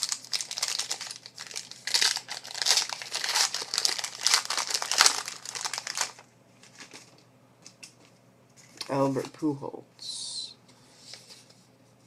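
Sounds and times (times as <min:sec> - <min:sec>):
wrapper crinkling as torn open: 0:00.0 - 0:07.2.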